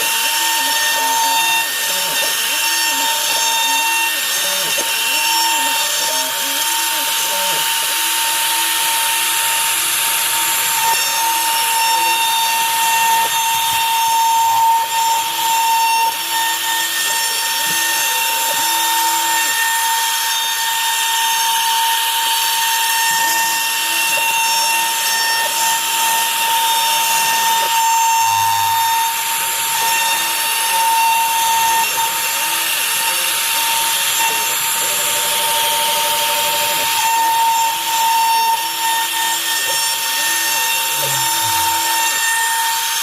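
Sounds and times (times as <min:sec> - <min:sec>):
router spindle high whine: 0:00.0 - 0:43.0.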